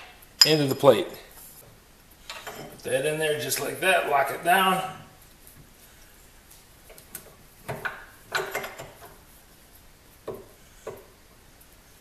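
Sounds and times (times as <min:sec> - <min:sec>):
metal knocks and clanks in a vise: 0:02.3 - 0:02.8, 0:07.7 - 0:09.2.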